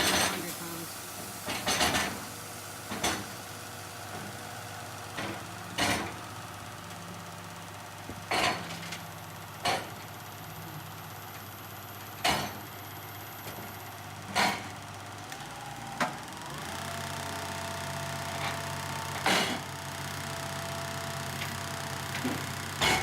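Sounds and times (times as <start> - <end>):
heavy engine idling: 0.0 - 23.0.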